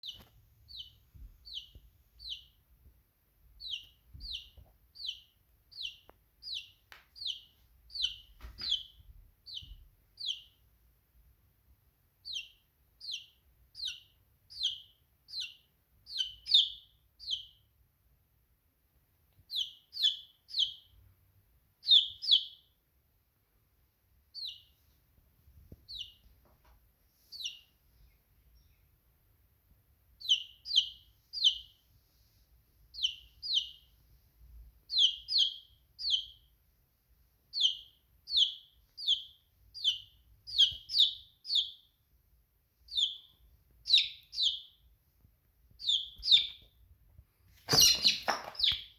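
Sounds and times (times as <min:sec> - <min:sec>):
chick peeping: 0:00.0 - 0:02.6, 0:03.6 - 0:10.6, 0:12.2 - 0:17.6, 0:19.3 - 0:21.0, 0:21.8 - 0:22.7, 0:24.3 - 0:24.8, 0:25.7 - 0:26.4, 0:27.3 - 0:27.7, 0:30.2 - 0:31.8, 0:32.9 - 0:33.9, 0:34.9 - 0:36.5, 0:37.5 - 0:41.9, 0:42.8 - 0:44.8, 0:45.8 - 0:46.8, 0:47.6 - 0:48.9.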